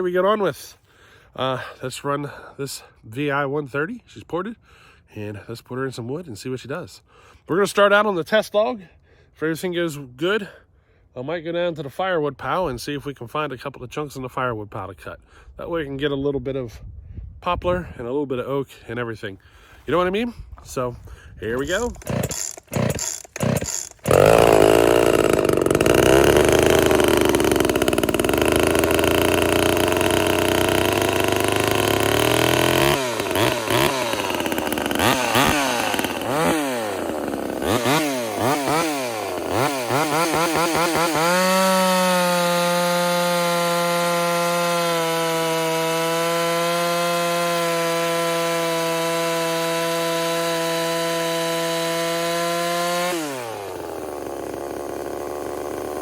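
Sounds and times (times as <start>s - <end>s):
chainsaw pull-start: 21.4s - 56.0s
chainsaw revving: 21.5s - 56.0s.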